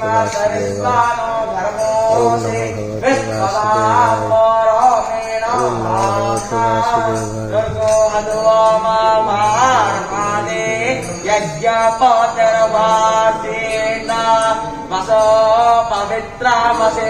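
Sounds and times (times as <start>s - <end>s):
man singing held notes: 0.0s - 11.8s
jingling metal percussion: 0.0s - 17.0s.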